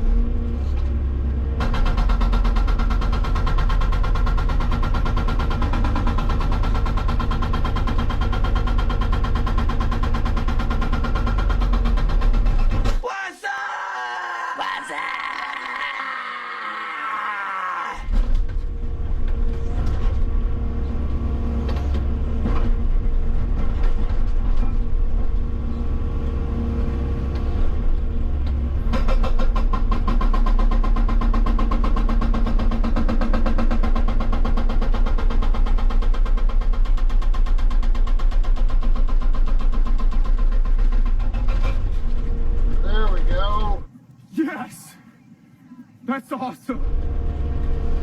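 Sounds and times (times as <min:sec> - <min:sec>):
excavator engine under load: 0:00.0 - 0:13.0, 0:18.1 - 0:43.9, 0:46.8 - 0:48.0
hydraulic breaker pounding rock: 0:01.6 - 0:13.0, 0:28.4 - 0:42.8.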